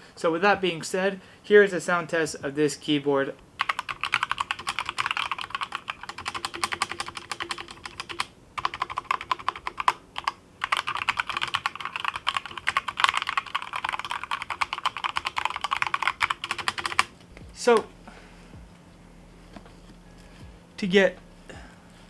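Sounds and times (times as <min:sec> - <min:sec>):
fast typing on mechanical keyboard: 0:03.6 - 0:17.1.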